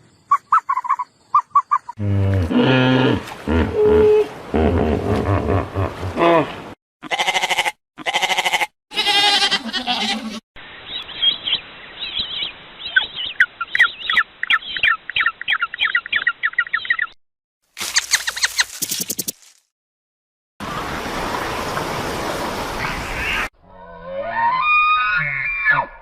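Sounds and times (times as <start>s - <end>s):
wavering bleats: 7.0s - 10.4s
bird chirping rapidly: 10.8s - 17.2s, 17.8s - 19.5s.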